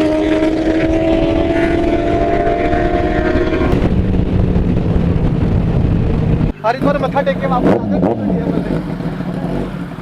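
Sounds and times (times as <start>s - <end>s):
wind rush: 0.0s - 7.1s
motorcycle engine at high revs: 0.0s - 10.0s.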